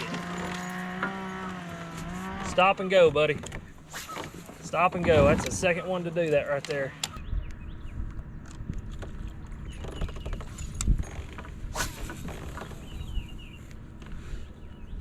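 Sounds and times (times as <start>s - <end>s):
wind rumble on microphone: 4.8s - 6.0s, 7.2s - 15.0s
fishing gear clicks and knocks: 8.1s - 12.9s.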